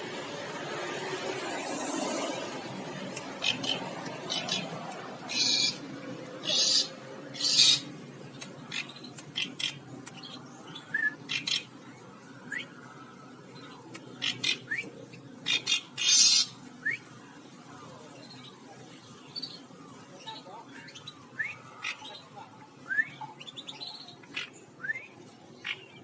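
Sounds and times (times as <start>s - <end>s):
bird harsh scratchy calls: 3.1s - 7.9s, 8.7s - 9.9s, 15.4s - 16.6s.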